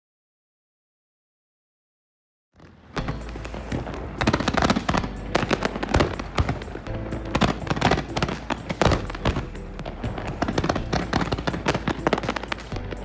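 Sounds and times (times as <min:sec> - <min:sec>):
fireworks bangs and crackles: 0:02.6 - 0:13.0
music: 0:02.7 - 0:13.0.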